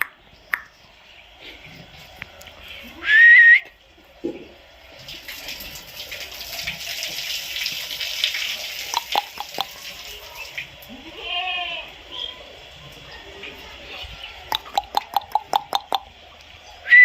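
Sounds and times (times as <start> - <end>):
water spraying hiss: 5.0 - 10.8.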